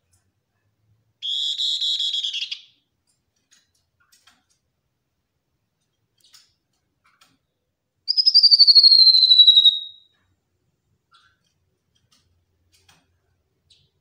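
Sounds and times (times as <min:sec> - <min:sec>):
bird whistled trill: 0:01.2 - 0:02.8, 0:08.1 - 0:10.1.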